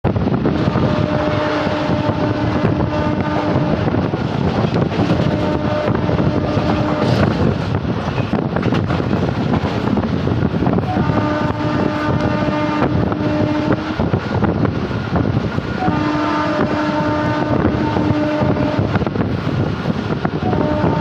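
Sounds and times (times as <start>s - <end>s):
train rumble: 0.0s - 21.0s
wind noise: 0.0s - 21.0s
locomotive air horn blasts: 0.4s - 4.2s, 5.1s - 7.3s, 10.8s - 14.2s, 15.8s - 19.0s, 20.4s - 21.0s.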